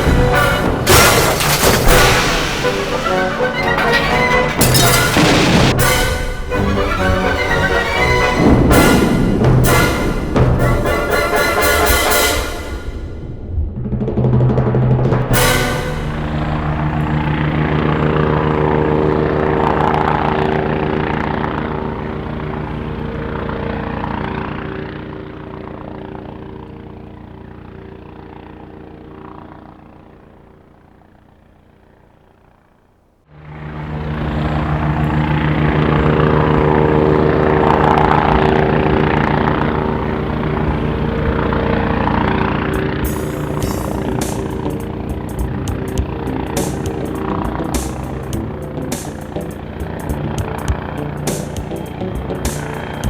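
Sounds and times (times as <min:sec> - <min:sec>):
vehicle engine droning: 0:00.0 - 0:53.0.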